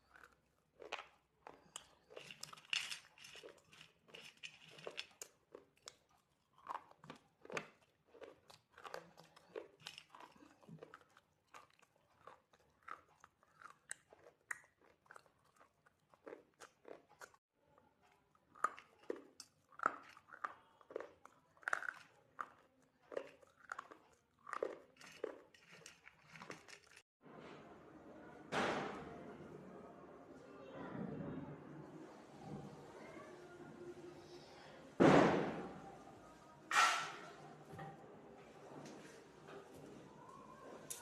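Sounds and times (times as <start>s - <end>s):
person chewing crunchy food: 0.0s - 17.4s, 18.0s - 27.1s.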